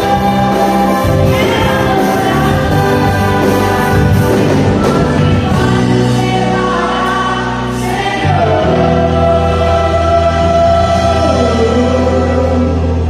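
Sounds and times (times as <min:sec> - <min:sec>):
choir singing gospel: 0:00.0 - 0:13.0
instrumental accompaniment: 0:00.0 - 0:13.0.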